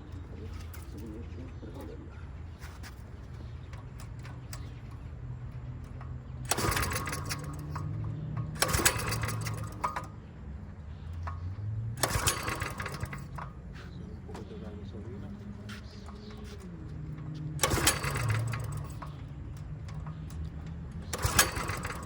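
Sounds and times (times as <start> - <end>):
small engine running and revving: 6.4 - 10.1, 11.4 - 13.5, 16.9 - 22.0.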